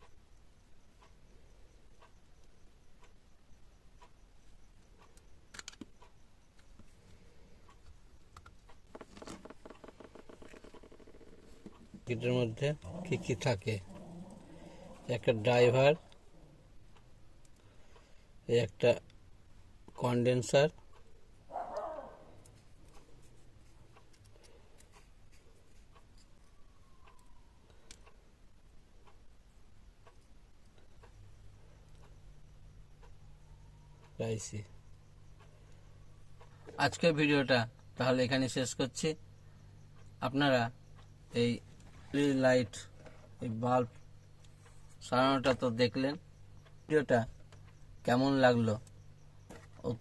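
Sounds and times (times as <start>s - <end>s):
light ticking: 0.0s - 50.0s
small parts clicking and tapping: 2.0s - 12.9s, 21.7s - 28.2s
small rattling clicks: 7.7s - 12.1s
faint light clicks: 21.7s - 28.2s.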